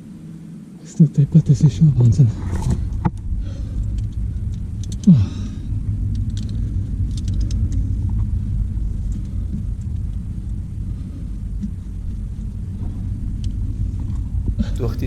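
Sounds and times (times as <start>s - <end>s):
wind rumbling on microphone: 0.0s - 15.0s.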